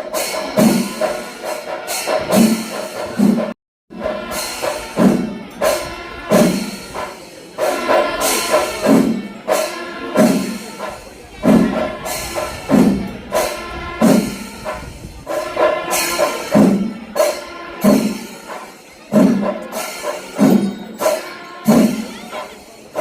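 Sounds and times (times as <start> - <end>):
hand cymbals clashing: 0.0 - 23.0
heavy drum strokes: 0.0 - 23.0
pitched wind instrument tones: 3.9 - 23.0.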